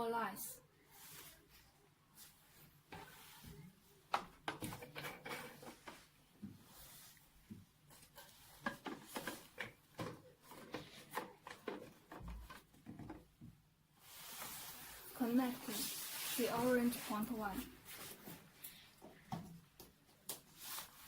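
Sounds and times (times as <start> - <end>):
hands handling plastic tubing: 1.0 - 17.1, 17.8 - 21.0.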